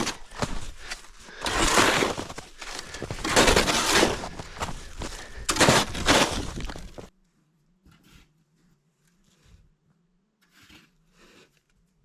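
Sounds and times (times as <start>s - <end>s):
crunching rustling noise: 0.0s - 7.1s.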